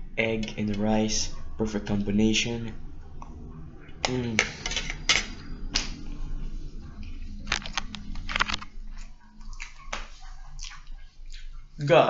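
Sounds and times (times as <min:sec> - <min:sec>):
low steady hum: 0:00.0 - 0:12.0
cutlery scraping on a plate: 0:04.4 - 0:05.4.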